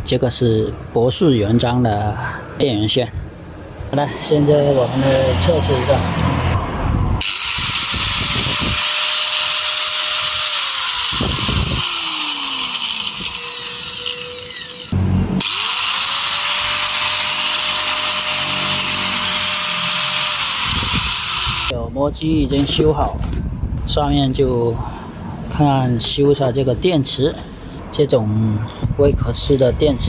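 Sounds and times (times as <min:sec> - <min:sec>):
angle grinder motor whining: 0:07.2 - 0:21.8.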